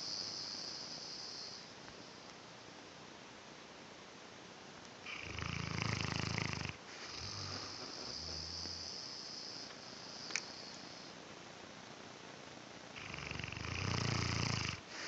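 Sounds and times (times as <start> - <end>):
dog snoring: 5.1 - 9.7, 13.0 - 15.0.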